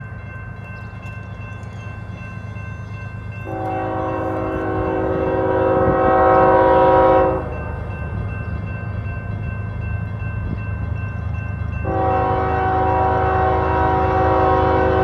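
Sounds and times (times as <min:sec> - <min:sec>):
passing train rumble: 0:00.0 - 0:15.0
locomotive air horn chord: 0:03.4 - 0:07.6, 0:11.8 - 0:15.0.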